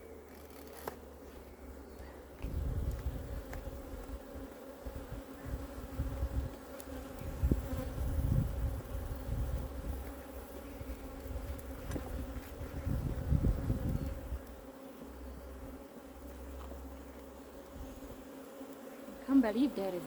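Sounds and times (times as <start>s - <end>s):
honeybees buzzing: 0.0s - 20.0s.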